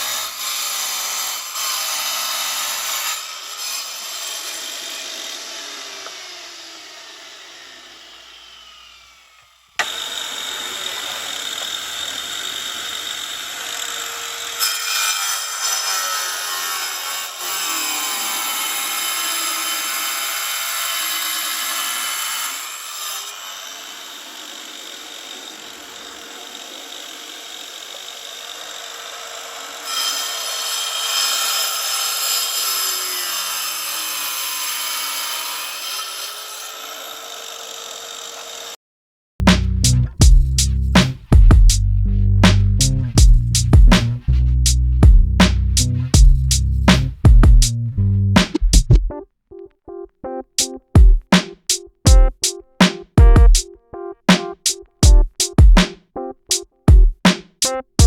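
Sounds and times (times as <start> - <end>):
power tool cutting with hissing whine: 0.0 - 38.7.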